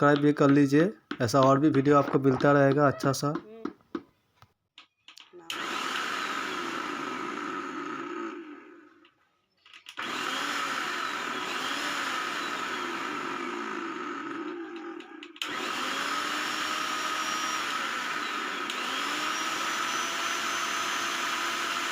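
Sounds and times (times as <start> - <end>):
mixer grinder motor whirring: 5.5 - 9.2, 9.8 - 21.9.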